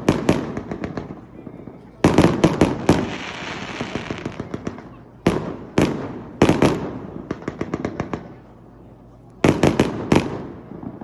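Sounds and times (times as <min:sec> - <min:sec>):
fireworks bangs: 0:00.0 - 0:08.5, 0:09.4 - 0:11.0
fireworks crackling: 0:00.0 - 0:08.7.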